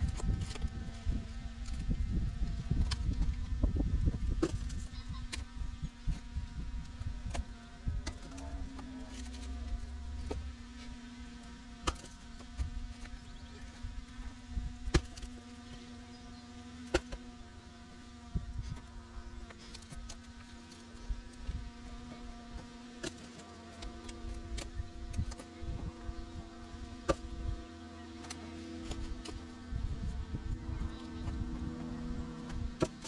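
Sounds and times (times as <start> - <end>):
excavator engine humming: 4.8 - 33.0
sharp knocks and cracks: 11.8 - 13.1, 14.9 - 15.3, 16.8 - 17.2, 32.5 - 33.0.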